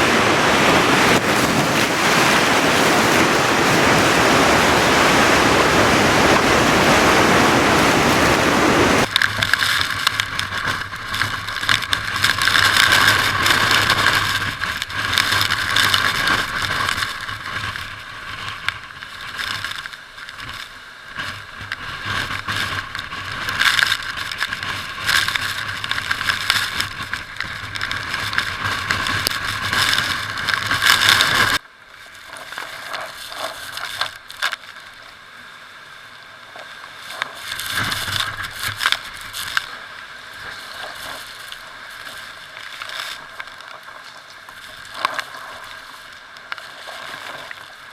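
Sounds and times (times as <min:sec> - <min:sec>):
roaring wind: 0:00.0 - 0:09.2.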